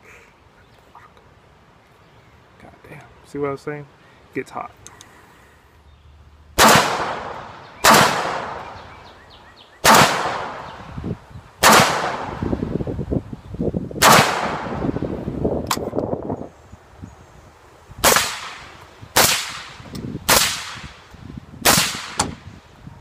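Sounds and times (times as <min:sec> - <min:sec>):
echoing gunshots: 0:06.6 - 0:09.0, 0:09.8 - 0:10.8, 0:11.6 - 0:12.6, 0:14.0 - 0:15.0, 0:18.0 - 0:21.0, 0:21.6 - 0:22.4
sharp click: 0:15.6 - 0:16.1, 0:22.0 - 0:22.4.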